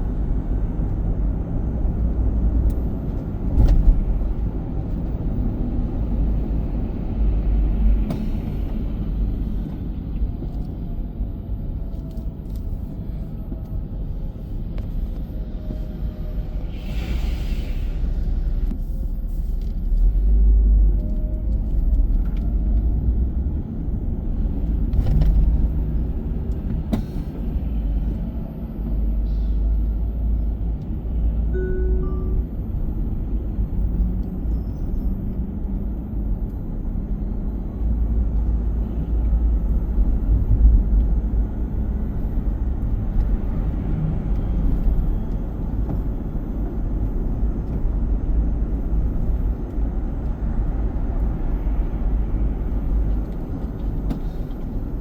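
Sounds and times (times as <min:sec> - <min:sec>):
road and engine rumble: 0:00.0 - 0:55.0
soft tone: 0:31.5 - 0:33.4.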